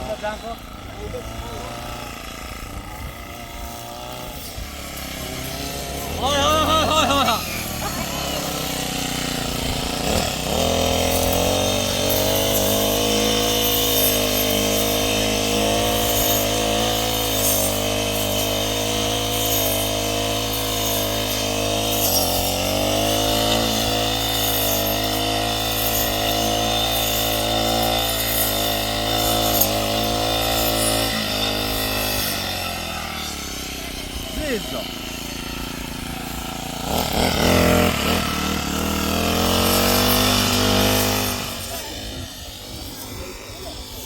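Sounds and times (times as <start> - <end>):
engine running under changing load: 28.1 - 44.0.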